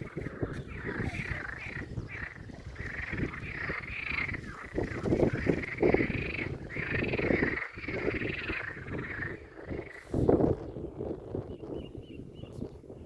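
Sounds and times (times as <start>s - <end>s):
low rushing noise in gusts: 0.0s - 11.6s
chorus of animal calls: 0.2s - 9.4s.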